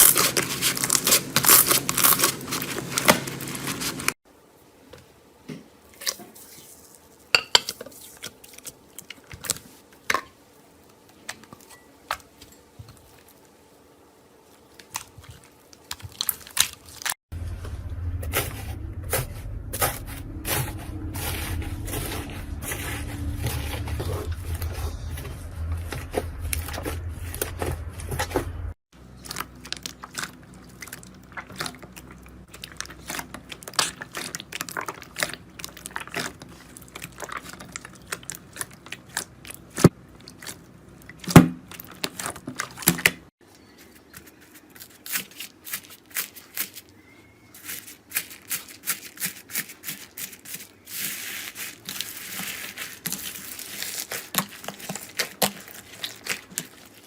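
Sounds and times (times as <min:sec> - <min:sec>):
low hum: 0:17.3 - 0:29.2.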